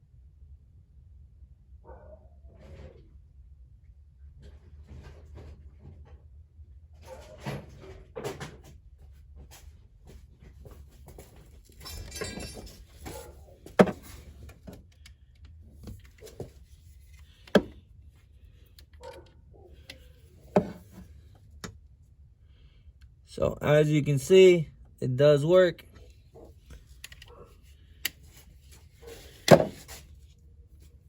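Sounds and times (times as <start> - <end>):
clicks and knocks of handled parts: 11.1 - 17.8, 26.0 - 27.4.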